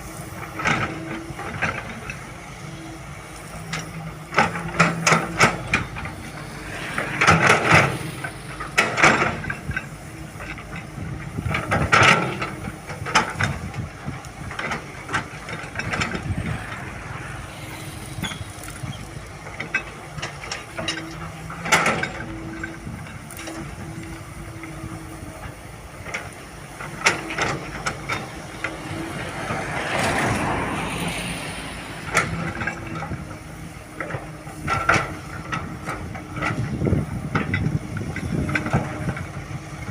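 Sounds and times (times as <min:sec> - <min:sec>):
diesel engine hum: 0:00.0 - 0:39.9
excavator clanks and knocks: 0:00.0 - 0:39.9
rush of noise: 0:05.1 - 0:09.9, 0:13.4 - 0:20.6, 0:27.4 - 0:33.4.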